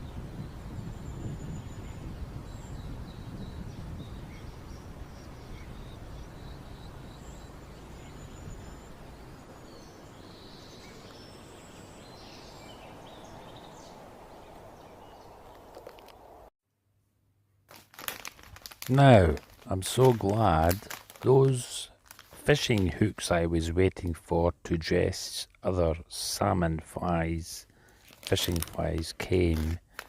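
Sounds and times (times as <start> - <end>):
songbirds chirping: 0.0 - 16.5.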